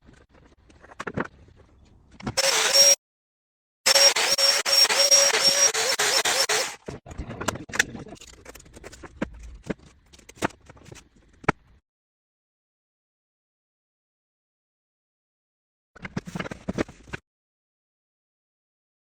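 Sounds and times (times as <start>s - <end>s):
power tool whining: 2.4s - 3.0s, 3.9s - 6.8s.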